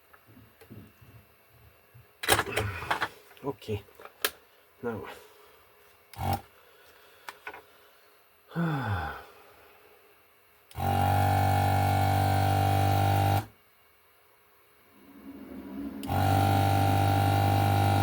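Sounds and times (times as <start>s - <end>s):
vacuum pump buzzing: 6.1s - 6.5s, 10.7s - 13.6s, 16.0s - 18.0s
low sound falling in pitch: 14.8s - 17.8s.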